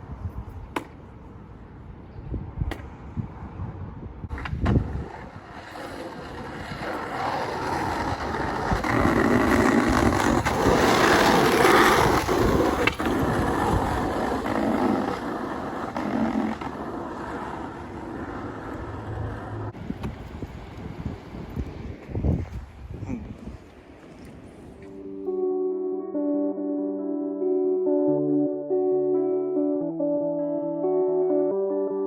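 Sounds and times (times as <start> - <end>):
skateboard wheels rolling on pavement: 0.0 - 25.3
skateboard clacks: 0.7 - 1.1, 4.3 - 22.7.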